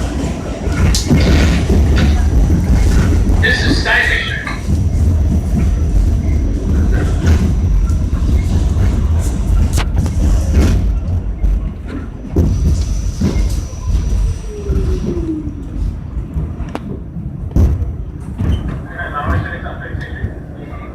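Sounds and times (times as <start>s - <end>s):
subway wheels rumbling on rail: 0.0s - 20.9s.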